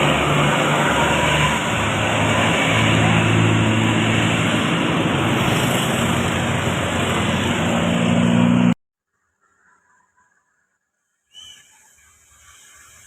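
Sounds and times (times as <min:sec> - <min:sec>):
bus engine running: 0:00.0 - 0:08.8
loud road and traffic noise: 0:00.0 - 0:08.8.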